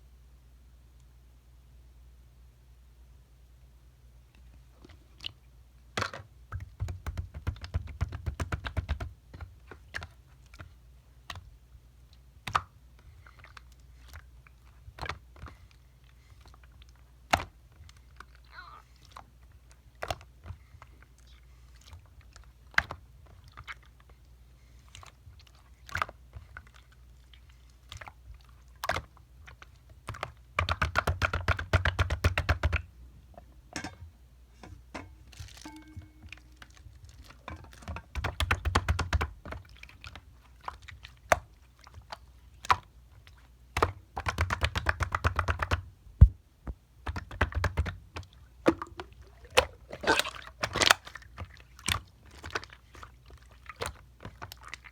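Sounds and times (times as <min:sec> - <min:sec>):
slime squishing with clicking pops: 0:06.0 - 0:11.5, 0:12.1 - 0:21.4, 0:25.3 - 0:33.0, 0:35.6 - 0:54.9.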